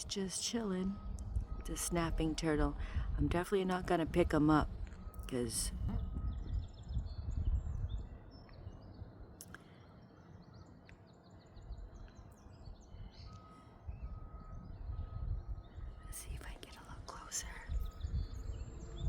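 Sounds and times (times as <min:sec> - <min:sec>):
low uneven rumble: 0:00.0 - 0:08.2, 0:12.7 - 0:19.0
small birds chirping: 0:05.9 - 0:19.0.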